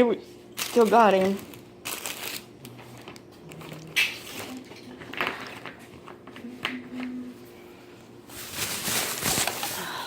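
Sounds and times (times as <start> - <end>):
objects rustling and clattering in a bag: 8.2 - 10.0.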